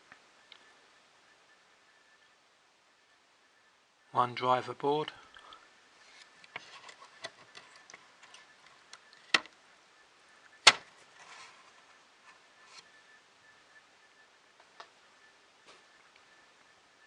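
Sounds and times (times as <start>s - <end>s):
circuit boards clicking: 6.4s - 9.6s, 10.6s - 10.9s.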